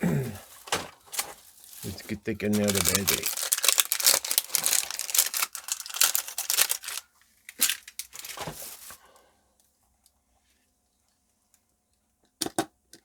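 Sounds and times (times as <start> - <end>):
crinkling handling noise: 0.3 - 9.2.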